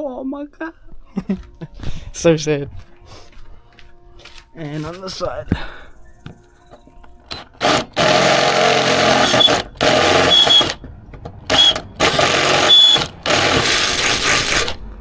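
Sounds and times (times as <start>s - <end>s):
electric drill boring sheet metal: 7.3s - 14.8s.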